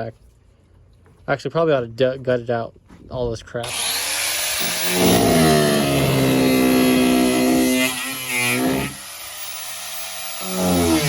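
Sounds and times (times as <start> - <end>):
small motor revving: 3.6 - 11.0.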